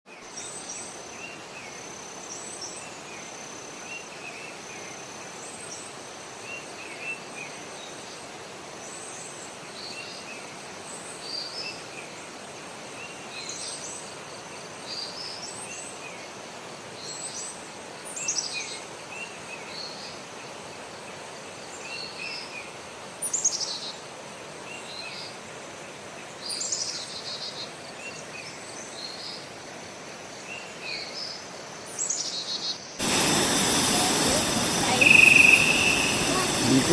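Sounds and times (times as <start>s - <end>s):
birds chirping: 32.0s - 36.9s
high downward-sweeping bird calls: 32.0s - 36.9s
noisy background: 33.0s - 36.9s.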